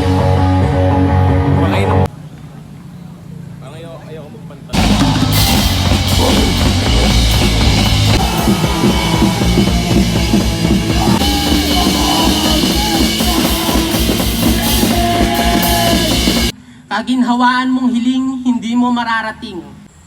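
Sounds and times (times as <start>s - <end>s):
loud rock music: 0.0s - 2.1s, 4.8s - 16.5s.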